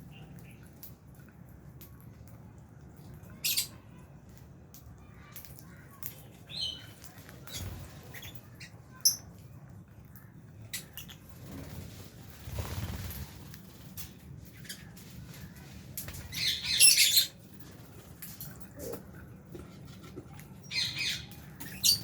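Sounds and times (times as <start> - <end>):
lovebirds squawking and chirping: 16.1 - 17.4, 20.6 - 22.0.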